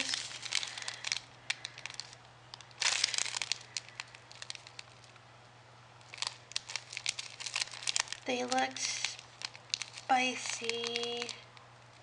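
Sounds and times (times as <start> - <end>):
snack packaging crinkling: 0.0 - 5.2, 6.0 - 12.0.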